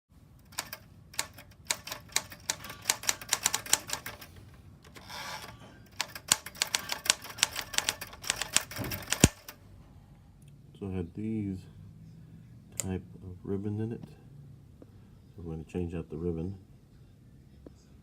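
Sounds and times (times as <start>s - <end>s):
typewriter key strikes: 0.4s - 4.2s, 6.0s - 9.5s.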